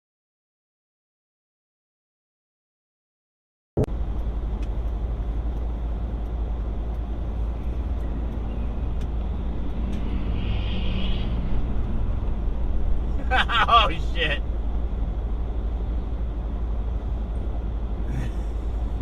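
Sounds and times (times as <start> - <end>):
car engine and road rumble: 3.8 - 19.0.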